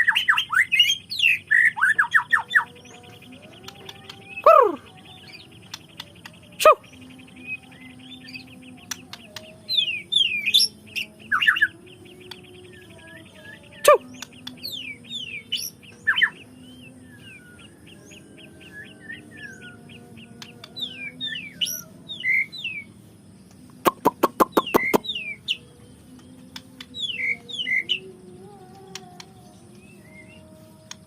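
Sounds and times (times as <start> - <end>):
bird singing whistles and trill: 0.0 - 31.0
sharp bird clicks: 5.2 - 6.6, 8.8 - 9.6, 14.0 - 14.8, 23.5 - 25.2, 26.2 - 27.2, 28.8 - 29.4.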